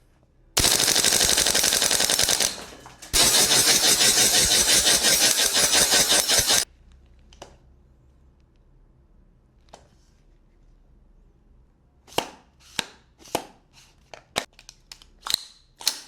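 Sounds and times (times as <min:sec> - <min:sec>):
airsoft rifle firing full auto: 0:00.6 - 0:06.6.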